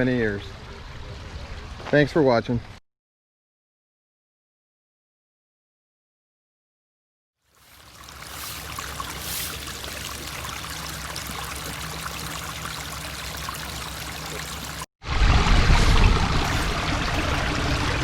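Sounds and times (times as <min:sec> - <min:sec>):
water trickling over rocks: 0:07.4 - 0:14.9.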